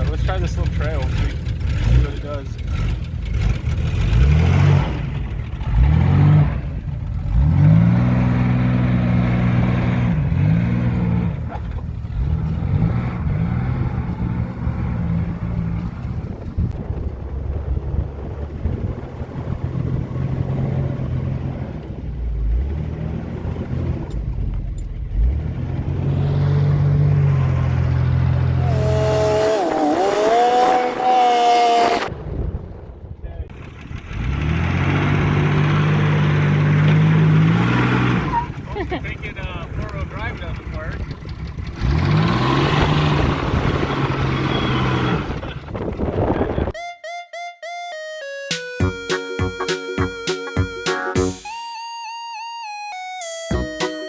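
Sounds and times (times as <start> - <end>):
engine revving under load: 0.0 - 32.1, 33.5 - 46.2
high wavering pitched sound: 46.8 - 54.0.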